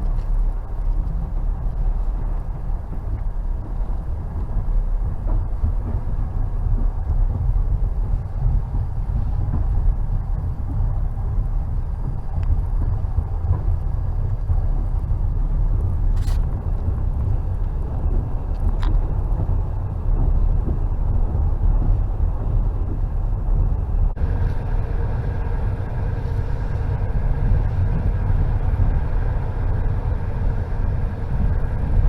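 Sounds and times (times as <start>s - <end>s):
train wheels rumbling on rails: 0.0s - 32.0s
sharp click: 16.2s - 16.5s.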